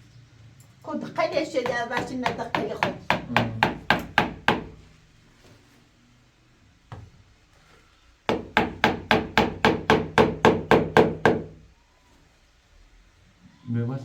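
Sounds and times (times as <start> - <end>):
knock: 1.6 - 4.8, 8.3 - 11.6.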